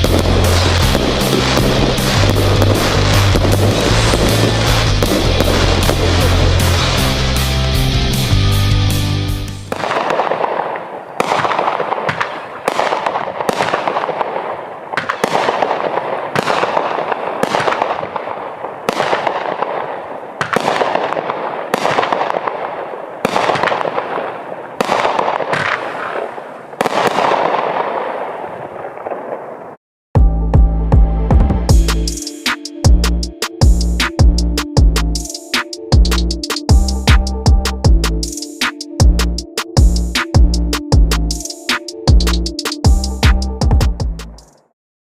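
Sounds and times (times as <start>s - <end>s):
fireworks cake firing: 0.0s - 7.4s.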